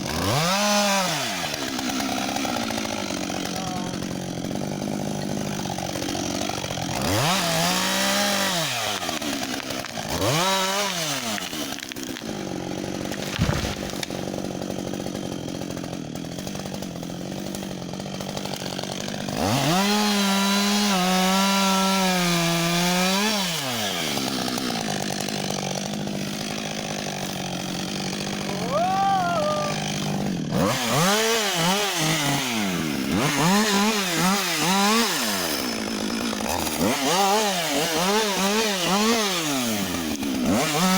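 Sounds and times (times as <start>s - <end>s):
chainsaw idling and revving: 0.0s - 40.9s.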